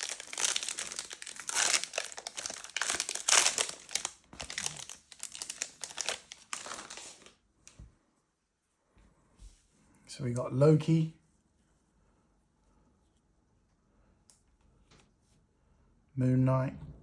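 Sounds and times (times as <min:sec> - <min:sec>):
foil wrappers tearing and crinkling: 0:00.0 - 0:07.3.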